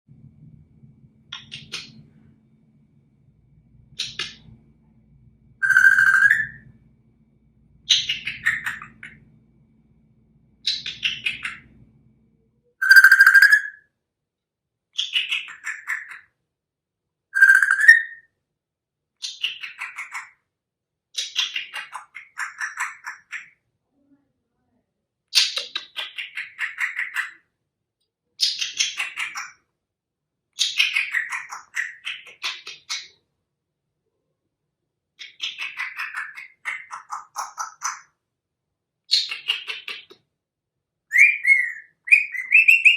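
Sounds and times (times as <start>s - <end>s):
parrot chirps stepping down: 5.6s - 6.7s
parrot whistling: 5.6s - 6.7s, 12.8s - 13.8s, 17.4s - 18.2s, 41.1s - 42.9s
rapidly pulsing whistle: 5.6s - 6.7s, 12.8s - 13.8s, 17.4s - 18.2s.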